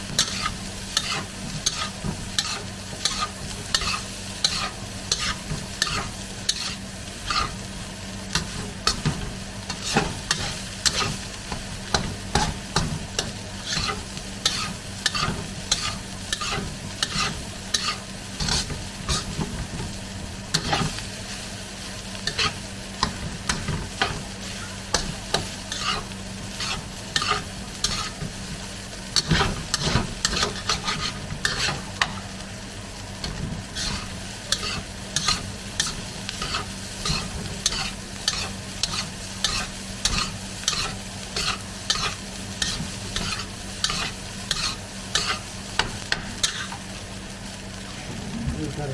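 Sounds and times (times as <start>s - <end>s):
rice sizzling in a pan: 0.0s - 48.9s
utensil scraping a pan: 0.1s - 7.6s, 11.9s - 19.9s, 22.2s - 28.3s, 29.2s - 32.2s, 33.2s - 46.8s.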